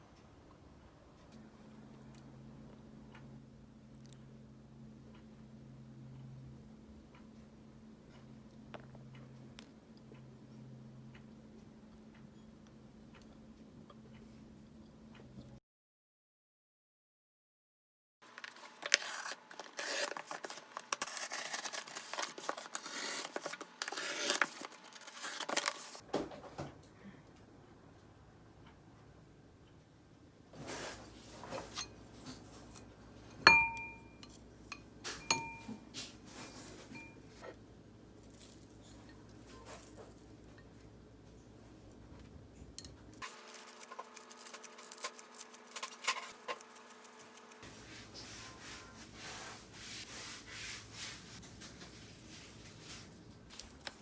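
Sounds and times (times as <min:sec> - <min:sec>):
faint room hum: 0:00.0 - 0:15.6, 0:18.3 - 0:54.0
packaging rustling and tearing: 0:18.3 - 0:26.0, 0:43.2 - 0:47.6
sharp clicks and snips: 0:43.2 - 0:47.6.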